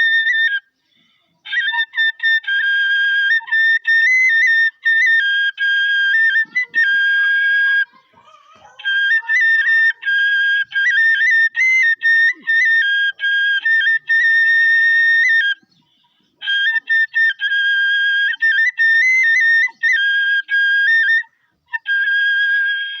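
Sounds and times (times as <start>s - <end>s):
high-pitched flute melody: 0.0s - 0.8s, 1.4s - 15.7s, 16.4s - 23.0s.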